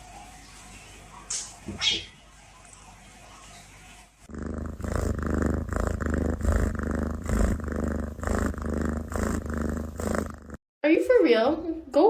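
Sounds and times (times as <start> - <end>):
cat purring: 4.2 - 10.6.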